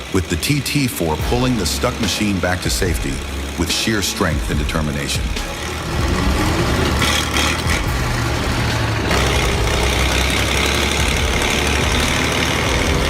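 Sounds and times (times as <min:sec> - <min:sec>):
heavy vehicle engine running: 0:00.0 - 0:13.0.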